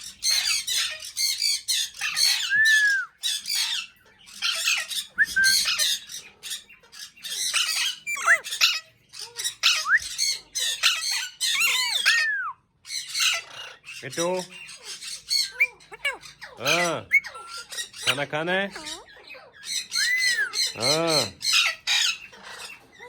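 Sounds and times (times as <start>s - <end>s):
parakeet squawking: 0.0s - 23.0s
parakeet whistles: 2.1s - 3.7s, 4.5s - 6.0s, 9.6s - 11.0s, 11.6s - 12.6s, 19.9s - 20.8s.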